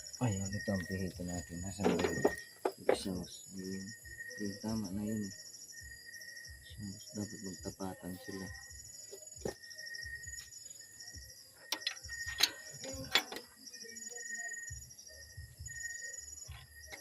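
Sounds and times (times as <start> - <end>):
insects chirping: 0.0 - 17.0
metallic clicks of hand tools: 11.7 - 13.4.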